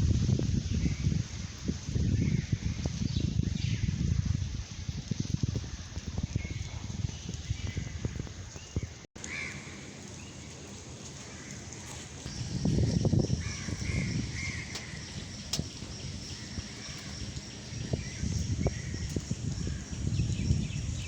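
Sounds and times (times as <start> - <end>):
birds calling: 6.4 - 21.0.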